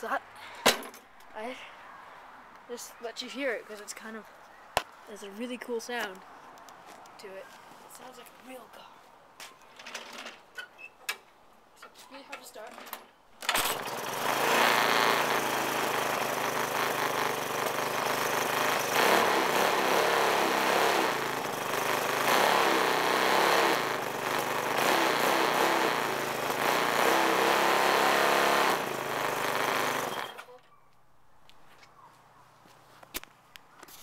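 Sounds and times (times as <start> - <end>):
lawn mower engine running: 13.5 - 30.5.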